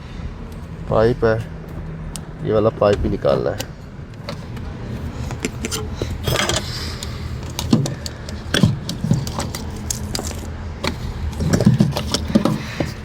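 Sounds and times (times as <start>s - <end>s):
steady low hum: 0.0s - 13.0s
hands clicking a fuel connector: 3.6s - 13.0s.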